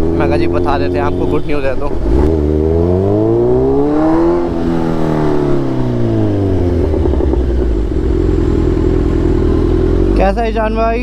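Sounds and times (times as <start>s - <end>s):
motorcycle engine idling: 5.0s - 10.8s.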